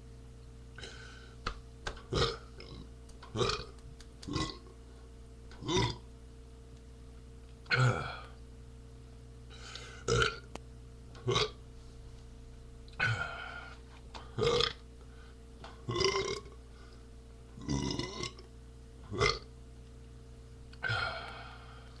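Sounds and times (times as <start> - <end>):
man burping: 2.1 - 3.7, 4.3 - 4.7, 5.6 - 6.1, 7.7 - 8.4, 10.0 - 10.5, 11.2 - 11.6, 13.0 - 13.7, 14.4 - 14.8, 15.9 - 16.6, 17.6 - 18.5, 19.1 - 19.5, 20.8 - 21.3.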